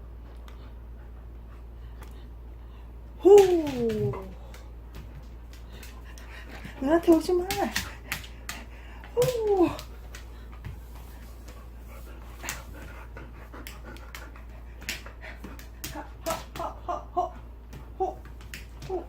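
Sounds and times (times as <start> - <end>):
dog panting: 5.5 - 16.1.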